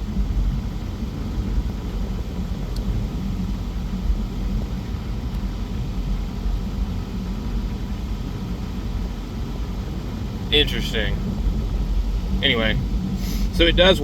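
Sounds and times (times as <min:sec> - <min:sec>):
vehicle engine idling: 0:00.0 - 0:14.0.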